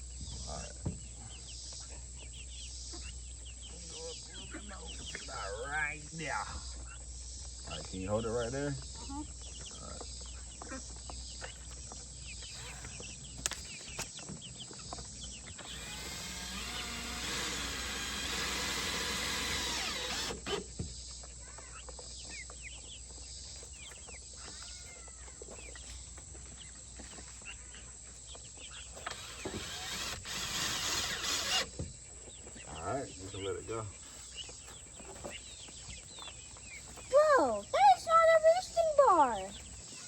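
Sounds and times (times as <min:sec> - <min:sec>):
power drill driving a screw: 0:15.5 - 0:20.8, 0:29.0 - 0:31.9.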